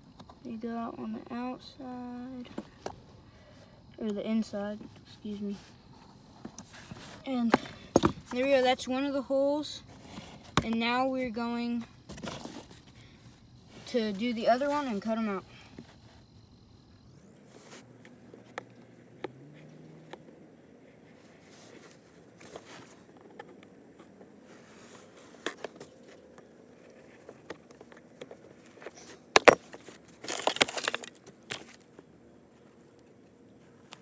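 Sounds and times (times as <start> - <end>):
crackly scraping: 0.0 - 34.0.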